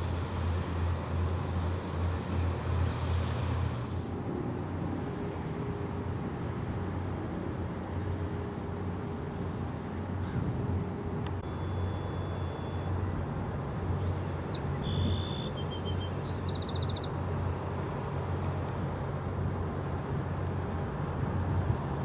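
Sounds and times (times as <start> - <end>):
boat engine droning: 0.0 - 22.0
bird chirping and trilling: 14.0 - 17.1.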